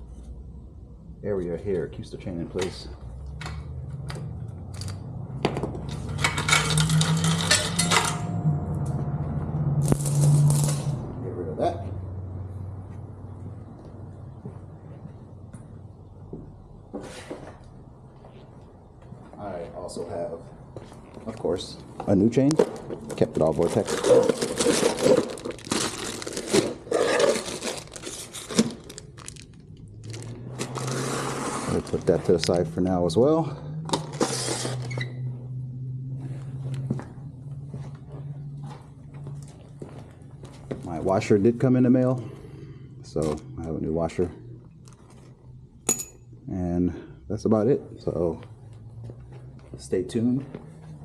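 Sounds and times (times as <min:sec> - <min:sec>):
metal chain clinking and rattling: 0:06.0 - 0:08.4, 0:45.9 - 0:46.3
rustling packaging: 0:22.8 - 0:32.6.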